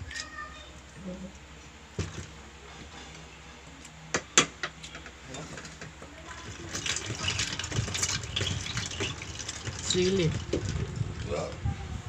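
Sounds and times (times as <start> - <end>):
liquid pouring: 6.3 - 11.5.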